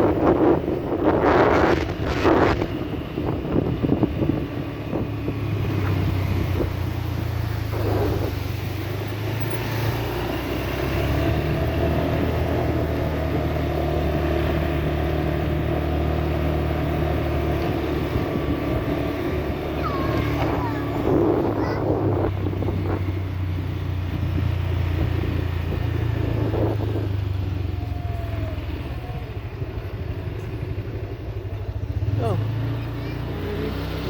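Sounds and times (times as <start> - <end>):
wind noise on microphone: 0.0 - 13.4, 17.4 - 29.8
motorbike engine running: 0.0 - 34.0.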